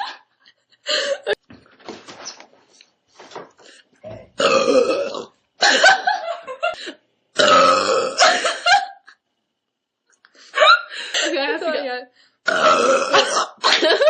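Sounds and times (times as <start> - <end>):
person burping loudly: 4.0 - 5.3, 7.4 - 8.4, 12.5 - 13.7.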